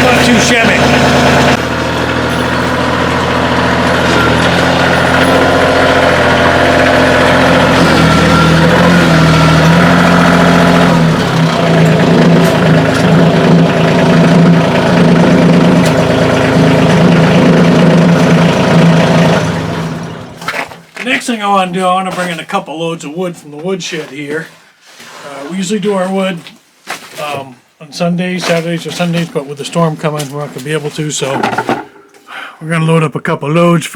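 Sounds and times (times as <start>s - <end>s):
tractor diesel engine running: 0.0s - 22.5s.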